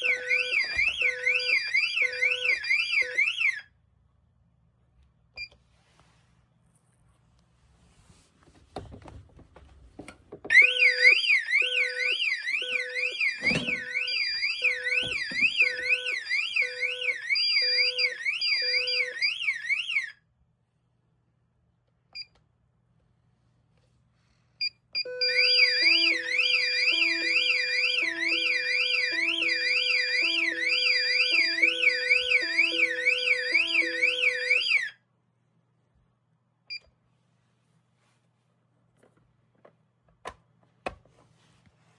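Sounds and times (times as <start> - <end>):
electronic alarm siren: 0.0 - 3.6, 10.5 - 20.2, 25.0 - 35.0.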